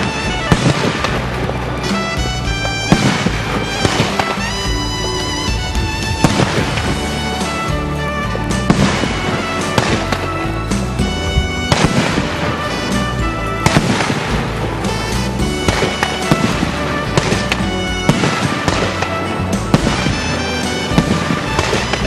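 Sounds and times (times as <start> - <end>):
background music: 0.0 - 22.0
fireworks bangs and crackles: 0.0 - 22.0.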